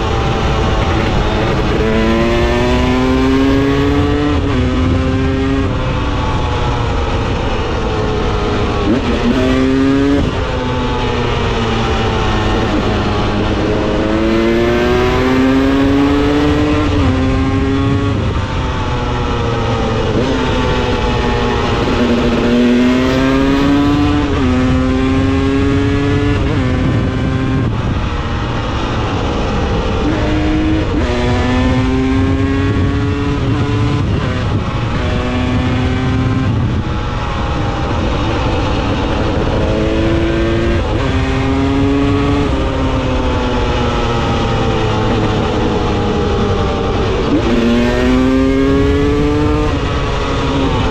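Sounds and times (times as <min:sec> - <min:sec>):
motorcycle engine accelerating: 0:00.0 - 0:50.9
wind and road noise: 0:00.0 - 0:50.9.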